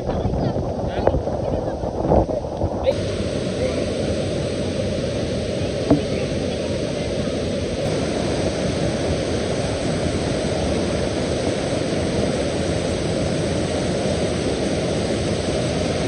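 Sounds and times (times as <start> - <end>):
waterfall roaring: 2.9 - 16.0.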